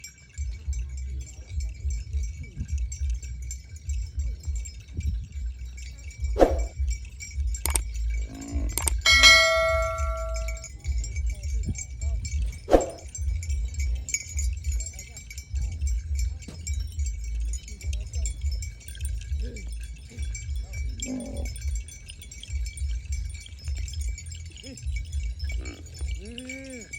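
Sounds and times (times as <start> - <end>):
cowbell clanking: 0.0 - 26.9
low rumble: 0.5 - 24.3.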